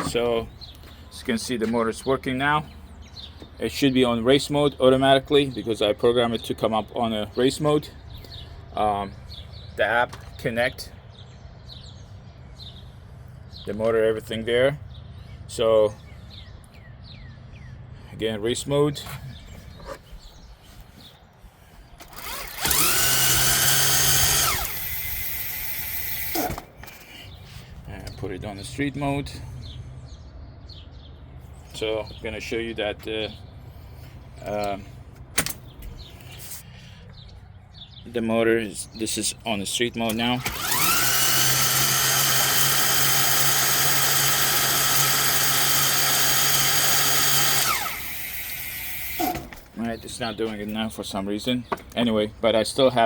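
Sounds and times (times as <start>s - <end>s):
electric motor whining: 22.0s - 26.7s, 40.4s - 49.6s.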